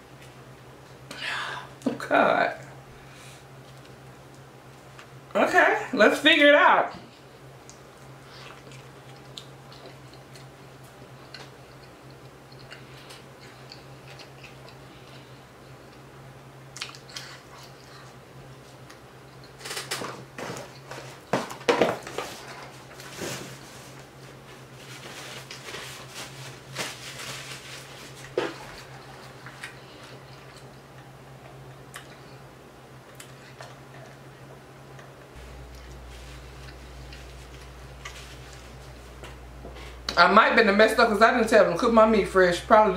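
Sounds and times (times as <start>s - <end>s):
steady low hum: 0.0s - 42.9s
chewing and biting burger: 8.4s - 16.1s.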